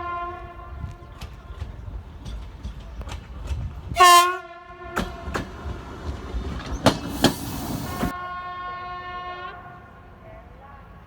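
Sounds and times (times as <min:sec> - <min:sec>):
train horn: 0:00.0 - 0:01.2, 0:03.9 - 0:05.6, 0:07.7 - 0:11.0
train wheels clattering: 0:00.8 - 0:04.2, 0:04.9 - 0:08.1
hissing rush: 0:05.5 - 0:08.1.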